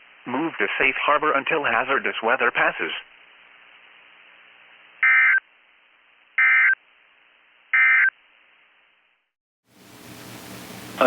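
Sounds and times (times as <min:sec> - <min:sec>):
broadcast noise: 0:00.0 - 0:07.0
faint radio hiss: 0:00.0 - 0:11.0
buzzing data tone bursts: 0:05.0 - 0:05.4, 0:06.4 - 0:06.8, 0:07.7 - 0:08.2.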